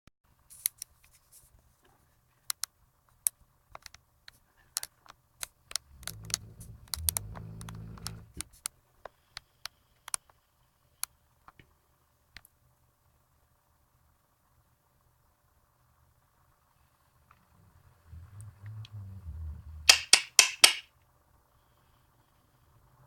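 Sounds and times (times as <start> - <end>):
sharp irregular clicks: 2.5 - 10.4, 19.9 - 20.9
drawn-out snore: 5.8 - 8.4.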